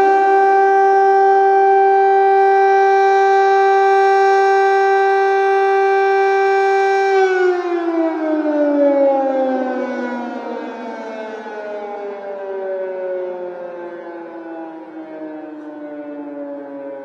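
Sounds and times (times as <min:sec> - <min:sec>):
air raid siren: 0:00.0 - 0:17.0.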